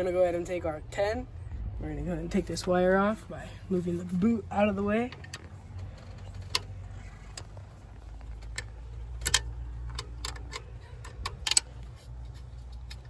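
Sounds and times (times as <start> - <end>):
low steady hum: 0.0 - 13.0
metallic wrench clicks: 8.5 - 11.8.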